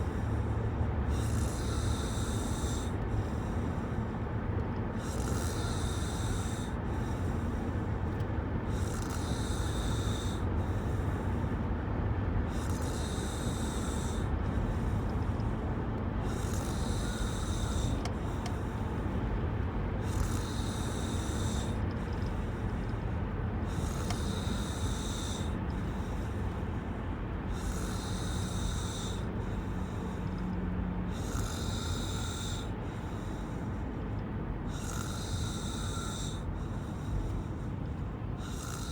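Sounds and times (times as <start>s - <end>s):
person snoring: 5.0s - 6.8s, 8.7s - 10.4s, 12.5s - 14.3s, 16.2s - 18.7s, 20.0s - 22.3s, 23.7s - 25.6s, 27.6s - 29.3s, 31.2s - 32.7s, 34.7s - 36.5s, 38.4s - 38.9s.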